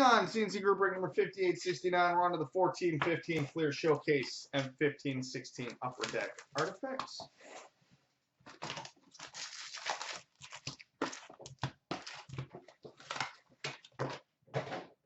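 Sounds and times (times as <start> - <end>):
packaging tearing and crinkling: 8.6 - 12.4.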